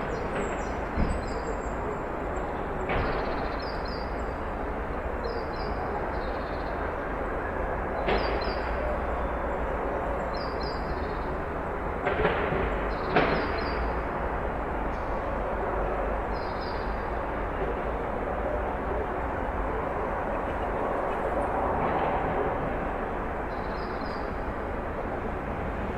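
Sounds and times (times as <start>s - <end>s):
traffic noise with low rumble: 0.0s - 25.9s.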